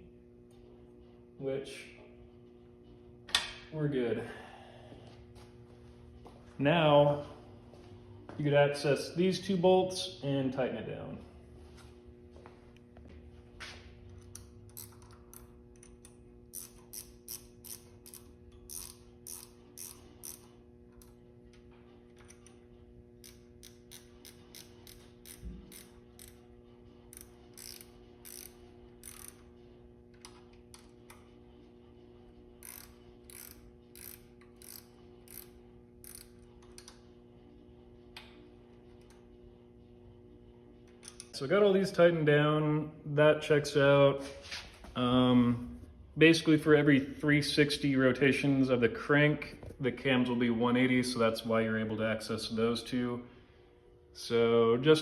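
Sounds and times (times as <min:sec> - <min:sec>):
hand ratchet clicking: 0:14.1 - 0:22.6, 0:23.2 - 0:26.4, 0:27.1 - 0:29.5, 0:32.6 - 0:37.0.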